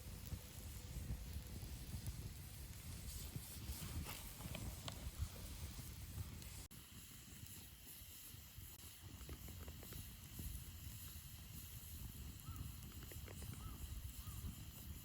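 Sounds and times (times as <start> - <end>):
wind rumble on microphone: 0.0 - 15.0.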